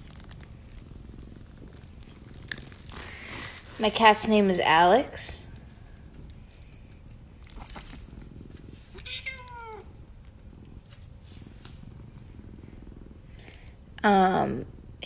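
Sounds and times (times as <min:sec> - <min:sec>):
cat purring: 0:00.0 - 0:15.0
rustling: 0:05.9 - 0:08.6
cat meowing: 0:09.0 - 0:09.8.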